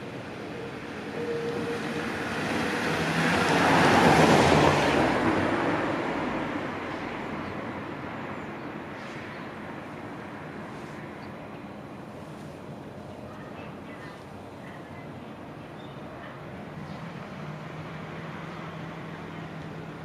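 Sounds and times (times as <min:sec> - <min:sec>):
vehicle passing by: 0:00.8 - 0:07.4, 0:16.8 - 0:20.0.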